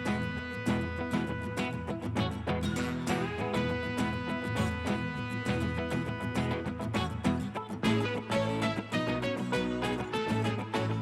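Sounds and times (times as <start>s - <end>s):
plucked guitar music: 0.0s - 11.0s.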